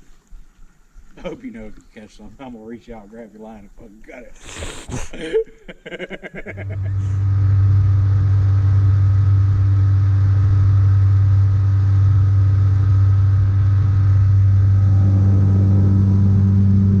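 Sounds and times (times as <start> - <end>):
boat motor humming: 6.4 - 17.0
higher tone: 6.5 - 17.0.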